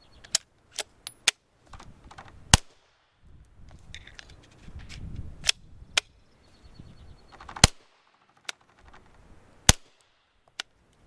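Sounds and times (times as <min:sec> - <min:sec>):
suppressed pistol shots: 0:07.5 - 0:08.2, 0:09.7 - 0:10.2.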